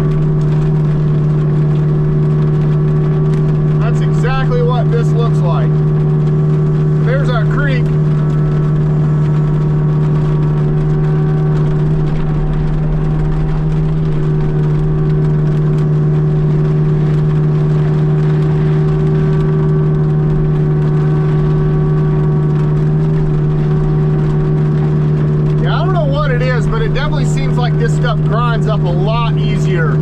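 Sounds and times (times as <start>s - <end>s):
mini excavator running: 6.5s - 30.0s.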